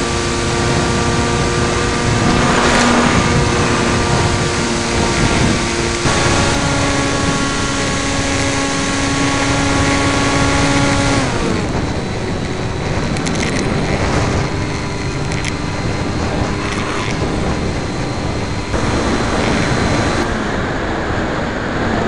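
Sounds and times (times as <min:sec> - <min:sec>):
model plane electric motor: 0:00.0 - 0:20.7
wind noise on microphone: 0:00.0 - 0:22.0.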